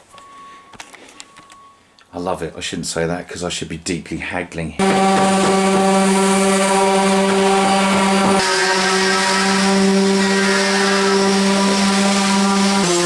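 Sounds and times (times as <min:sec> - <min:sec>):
motor running steadily: 0:04.8 - 0:13.0.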